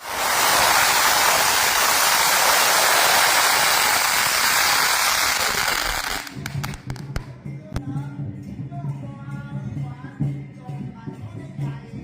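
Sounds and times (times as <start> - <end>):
loud steady hissing: 0.0 - 6.9.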